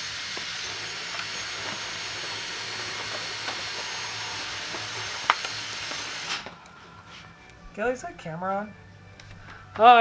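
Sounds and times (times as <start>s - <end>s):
hissing shop noise: 0.0s - 7.8s.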